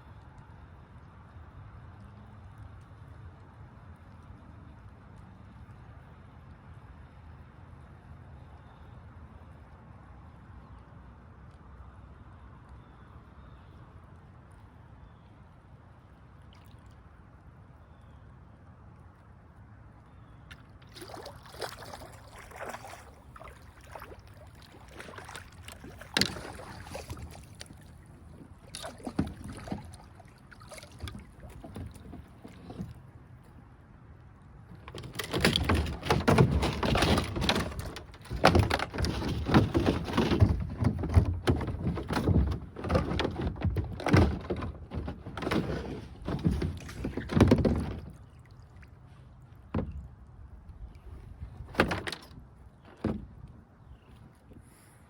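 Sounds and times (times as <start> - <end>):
knocks and scrapes on kayak hull: 21.0 - 33.6, 34.7 - 48.4, 49.1 - 55.0
thumps and rattles: 31.0 - 33.0, 34.7 - 48.2, 51.4 - 53.5.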